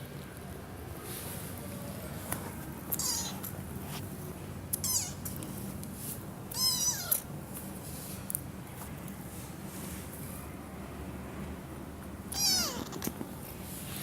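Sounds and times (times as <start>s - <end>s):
cat meowing: 2.9s - 3.5s, 6.5s - 7.2s, 12.3s - 13.1s.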